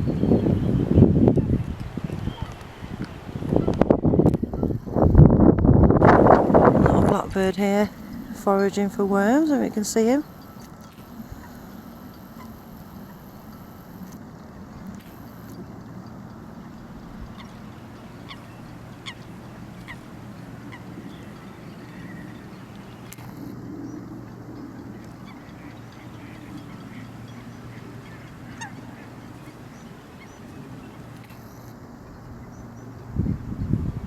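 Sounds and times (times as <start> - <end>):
wind noise: 0.0 - 31.0, 31.8 - 34.0
waterfowl calling: 9.3 - 14.2, 16.6 - 31.7.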